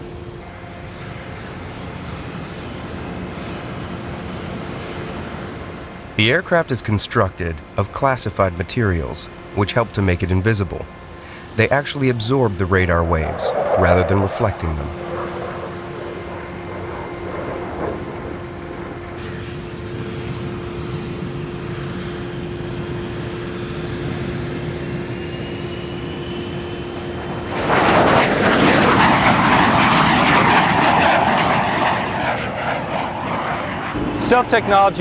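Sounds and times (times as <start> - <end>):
jet engines whining: 6.2 - 21.0, 22.2 - 35.0
loud rush of jet noise: 11.2 - 19.7, 25.9 - 35.0.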